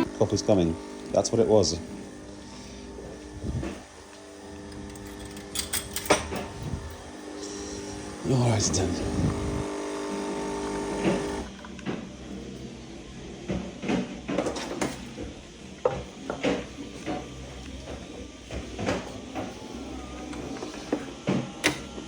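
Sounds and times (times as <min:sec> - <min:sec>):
coffee machine buzzing: 0:00.0 - 0:22.0.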